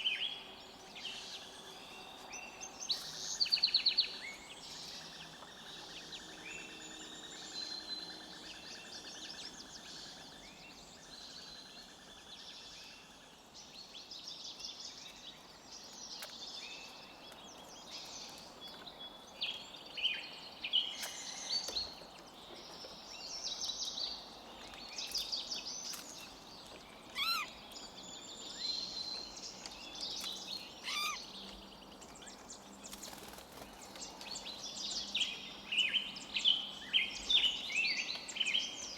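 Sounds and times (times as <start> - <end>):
songbirds chirping and trilling: 0.0 - 38.9.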